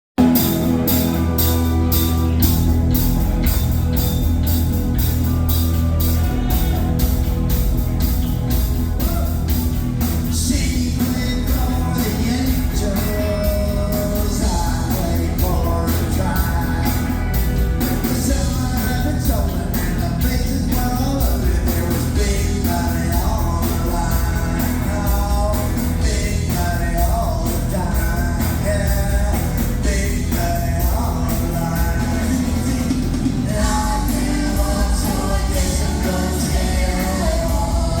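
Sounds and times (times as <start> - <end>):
drum beat: 0.2 - 38.0
live rock band: 0.2 - 38.0
man singing: 8.5 - 38.0.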